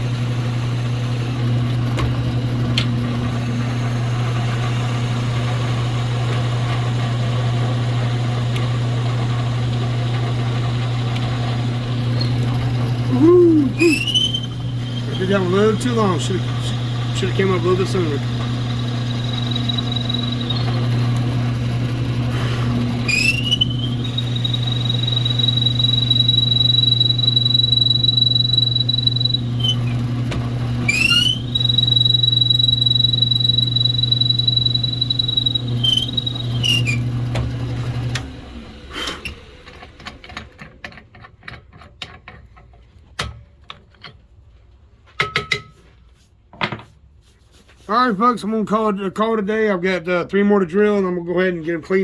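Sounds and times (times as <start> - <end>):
drill press motor humming: 0.0 - 40.6
drill bit squealing: 12.0 - 21.7, 22.4 - 37.2.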